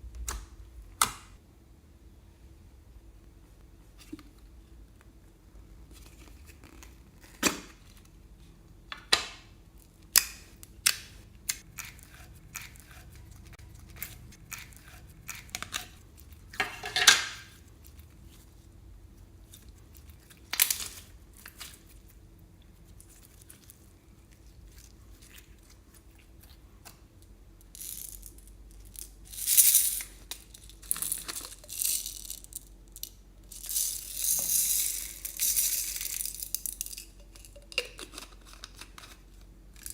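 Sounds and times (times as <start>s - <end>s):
crinkling and rustling: 5.8s - 8.2s.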